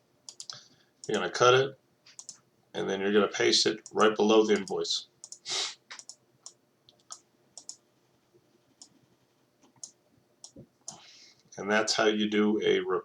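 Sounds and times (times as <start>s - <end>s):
mouse and keyboard clicks: 0.3s - 1.2s, 2.2s - 2.4s, 3.8s - 6.2s, 6.9s - 7.8s.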